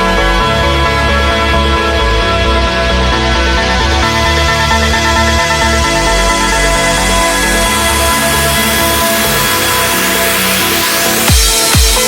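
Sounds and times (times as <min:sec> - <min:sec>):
electronic dance music: 0:00.0 - 0:12.0
rising noise sweep: 0:07.2 - 0:12.0.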